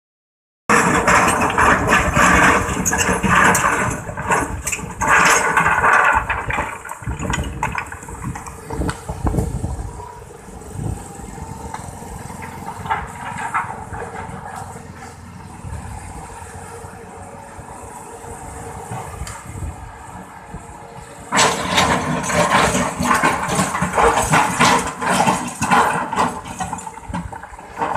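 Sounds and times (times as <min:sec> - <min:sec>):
excavator engine running: 0:00.7 - 0:27.9.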